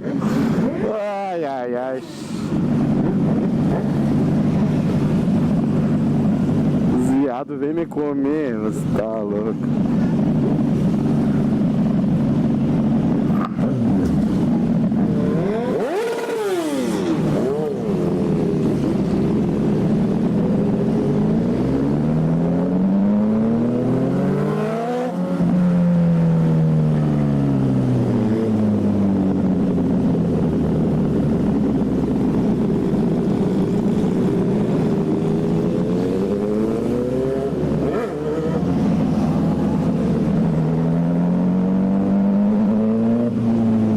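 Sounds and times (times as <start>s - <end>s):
motorcycles running: 0.0s - 43.9s
motorcycle engine revving: 10.3s - 43.9s.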